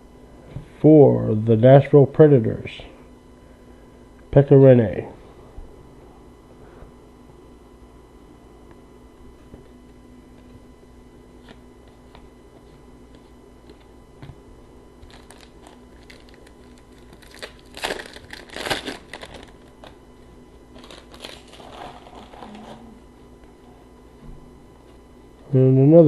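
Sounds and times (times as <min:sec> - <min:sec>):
wrapper tearing and crinkling: 0:15.0 - 0:20.0, 0:20.7 - 0:22.8.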